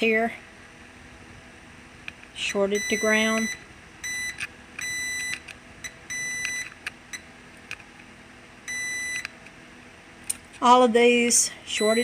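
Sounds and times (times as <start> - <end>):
multimeter beeping: 2.7 - 7.3, 8.7 - 9.3, 11.8 - 12.0.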